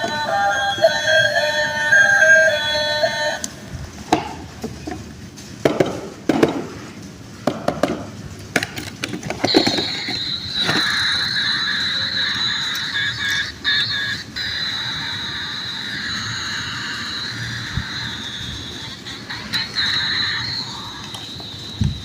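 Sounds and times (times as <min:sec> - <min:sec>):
high-pitched whine: 0:09.4 - 0:22.0.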